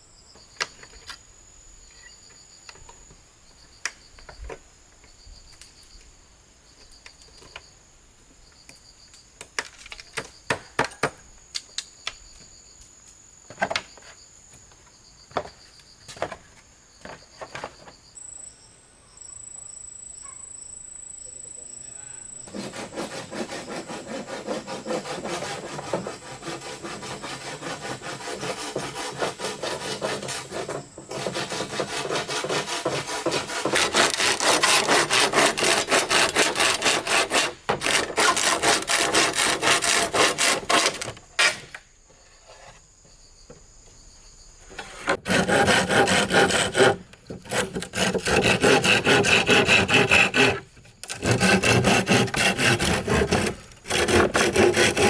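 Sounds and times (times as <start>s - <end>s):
hand saw cutting bamboo: 22.5s - 41.8s, 44.8s - 55.0s.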